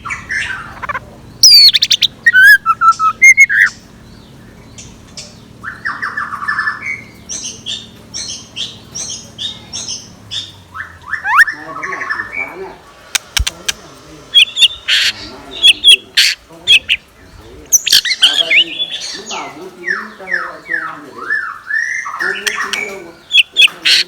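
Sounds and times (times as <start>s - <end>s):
bird whistles and trills: 0.0s - 3.9s, 4.6s - 12.5s, 17.8s - 24.0s.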